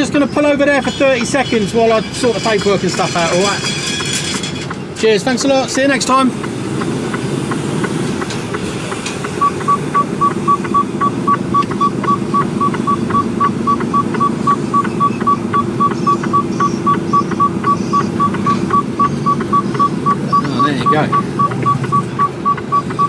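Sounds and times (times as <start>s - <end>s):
truck diesel engine idling: 0.0s - 3.7s, 4.7s - 23.0s
short high electronic beeps: 9.4s - 23.0s.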